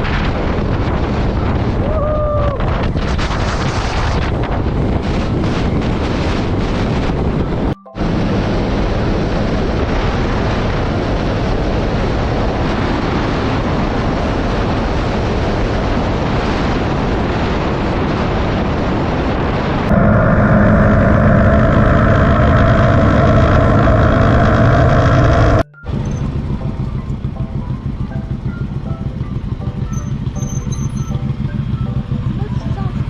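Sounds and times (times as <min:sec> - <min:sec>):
motorcycle road noise: 0:00.0 - 0:33.0
wind rush on microphone: 0:00.0 - 0:33.0
background music with sustained tones: 0:25.8 - 0:33.0.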